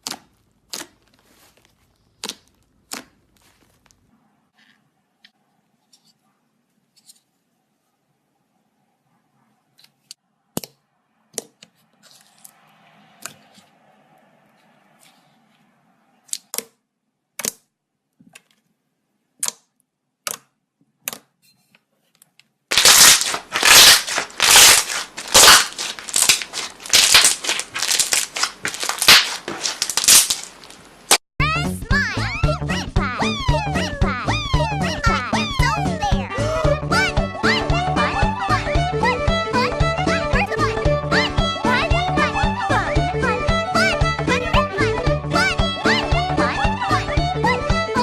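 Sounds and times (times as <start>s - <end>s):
slime squishing and popping: 22.7s - 30.8s.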